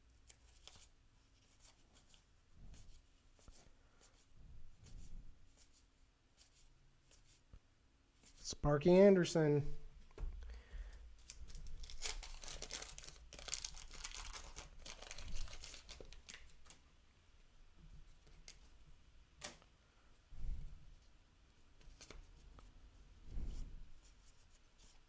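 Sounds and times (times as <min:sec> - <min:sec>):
cards being handled: 0:00.2 - 0:00.9, 0:11.2 - 0:16.8, 0:21.8 - 0:22.3
wax paper wrapper tearing: 0:11.2 - 0:16.8.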